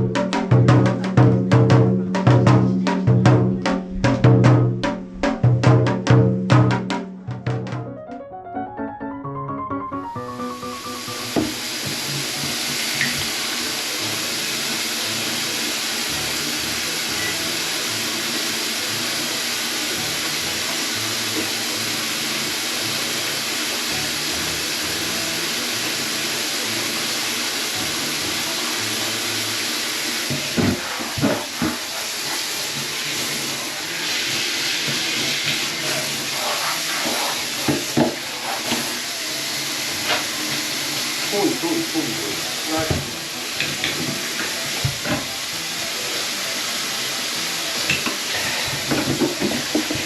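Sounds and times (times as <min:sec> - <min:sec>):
knocks and thumps: 0:00.2 - 0:07.8
steady rain falling: 0:38.3 - 0:49.8.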